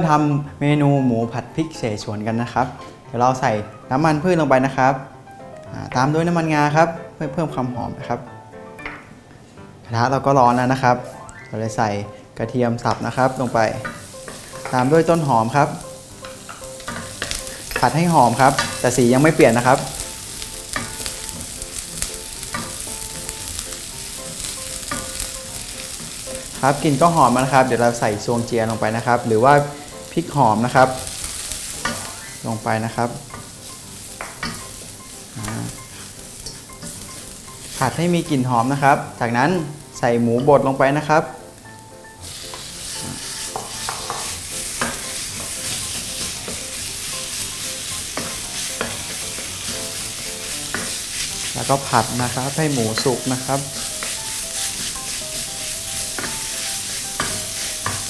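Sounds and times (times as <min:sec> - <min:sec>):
garlic sizzling in oil: 0:13.0 - 0:58.0
utensil scraping a pan: 0:42.2 - 0:58.0.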